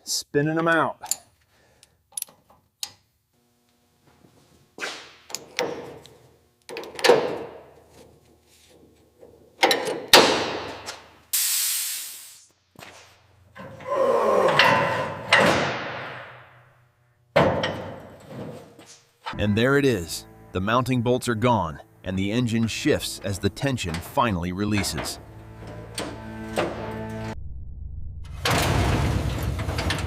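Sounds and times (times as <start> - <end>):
short hiss: 11.3 - 12.5
metal clunks and scrapes: 17.4 - 19.4, 24.8 - 26.9.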